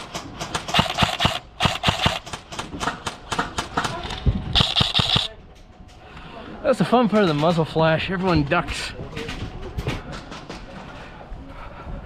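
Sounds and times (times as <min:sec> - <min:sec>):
airsoft guns firing: 0:00.0 - 0:05.3.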